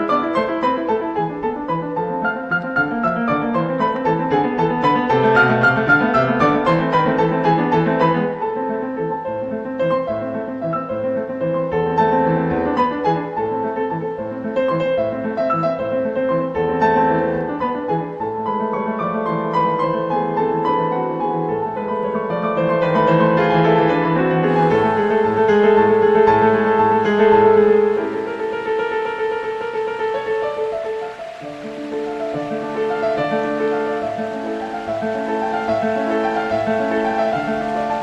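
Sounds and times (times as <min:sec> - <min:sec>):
classical piano piece: 0:00.0 - 0:38.0
hiss: 0:24.4 - 0:38.0.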